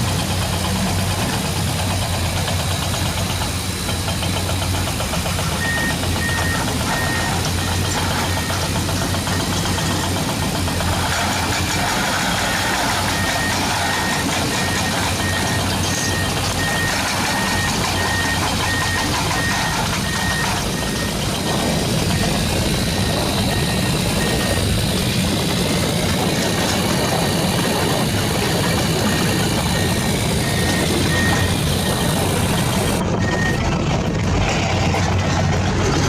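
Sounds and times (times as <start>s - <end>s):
toy vehicle mechanical drone: 1.9s - 33.6s
high electronic beep: 5.6s - 10.0s, 12.2s - 25.3s, 26.4s - 33.7s.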